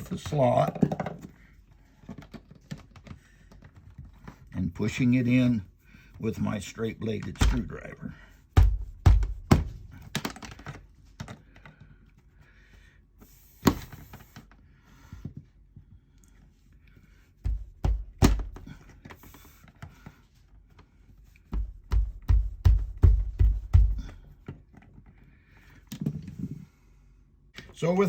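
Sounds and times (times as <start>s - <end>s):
screwdriver knocking on plastic: 21.5s - 24.2s.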